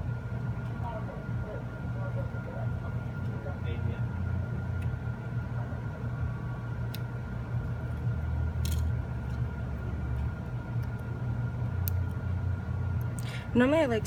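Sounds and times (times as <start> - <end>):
low background hum: 0.0 - 14.0
small tool clicks: 8.6 - 8.9.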